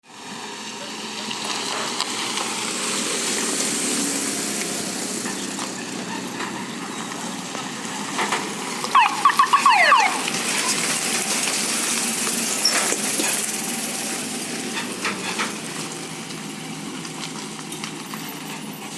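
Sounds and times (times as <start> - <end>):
fire truck siren yelp: 4.4 - 13.4.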